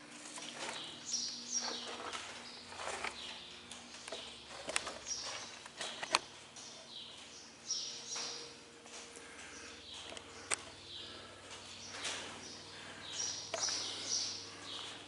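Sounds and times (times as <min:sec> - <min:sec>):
birds singing: 0:00.4 - 0:15.0.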